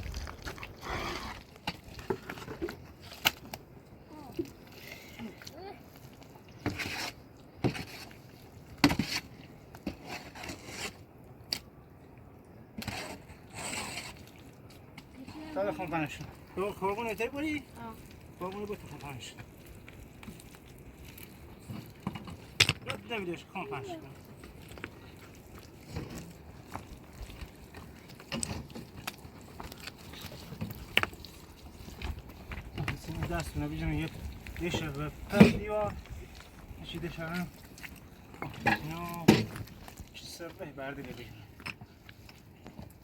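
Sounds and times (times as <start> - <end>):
irregular knocks and scrapes: 0.0 - 3.6, 6.6 - 11.0, 12.8 - 15.1, 21.1 - 23.1, 25.8 - 37.2, 37.9 - 43.0.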